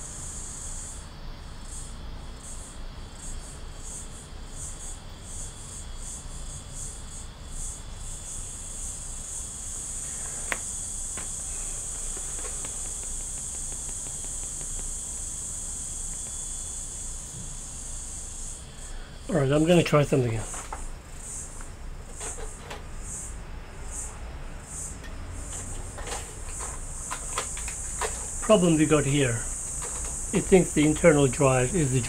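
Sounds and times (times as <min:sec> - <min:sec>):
insects chirping: 0:00.0 - 0:32.0
sharp click: 0:12.0 - 0:15.1.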